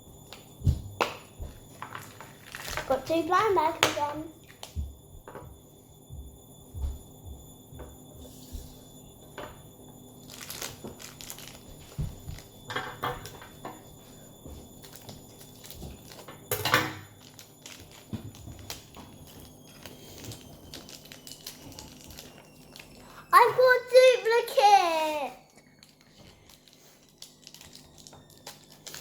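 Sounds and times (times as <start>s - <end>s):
plastic bag crinkling: 1.8s - 3.7s, 10.2s - 12.5s, 17.2s - 24.6s, 25.4s - 29.0s.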